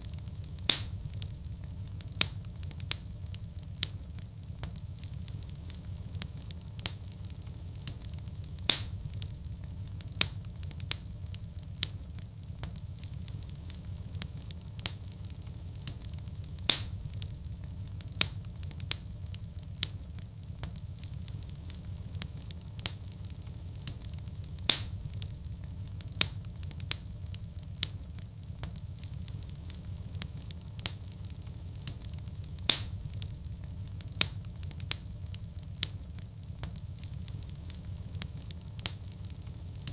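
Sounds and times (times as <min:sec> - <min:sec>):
fire crackling and popping: 0:00.0 - 0:39.9
fire rumbling: 0:00.0 - 0:39.9.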